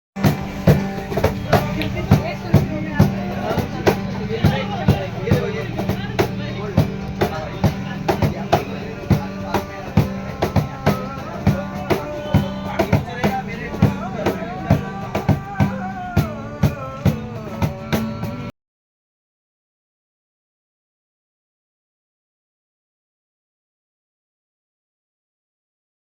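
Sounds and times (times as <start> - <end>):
steady drum beat: 0.2 - 18.5.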